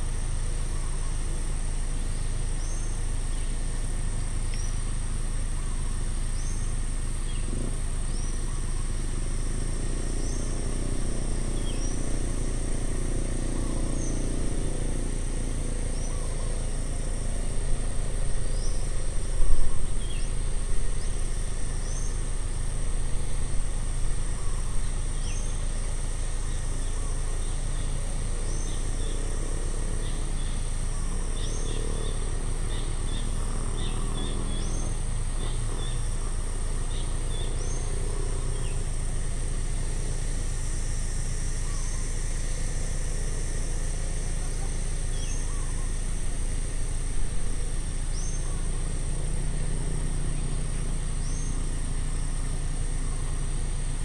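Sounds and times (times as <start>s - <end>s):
constant low rumble: 0.0s - 54.0s
high insect drone: 0.0s - 54.0s
vehicle passing: 9.2s - 24.3s.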